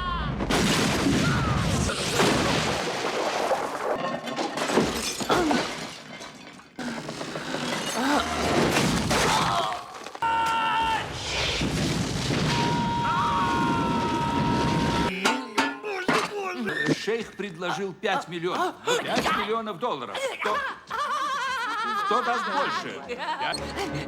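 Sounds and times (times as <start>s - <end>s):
crashes and shattering: 0.4s - 16.5s.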